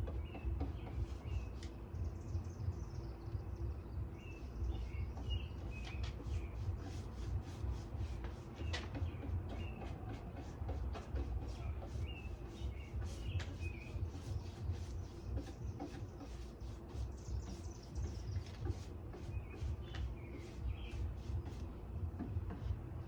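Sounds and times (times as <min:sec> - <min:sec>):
birds chirping: 0:00.0 - 0:07.3, 0:11.5 - 0:22.3.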